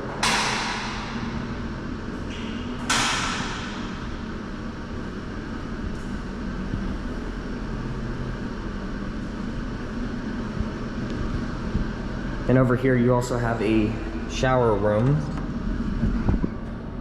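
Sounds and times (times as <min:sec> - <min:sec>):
air handling machinery hum: 0:00.0 - 0:17.0
sharp echoing knock: 0:00.2 - 0:01.2, 0:02.9 - 0:04.0.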